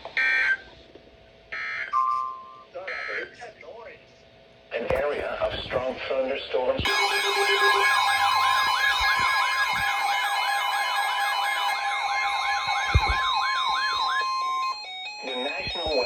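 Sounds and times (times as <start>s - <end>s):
high alarm tone: 6.9s - 16.0s
yelping siren sweep: 6.9s - 16.0s.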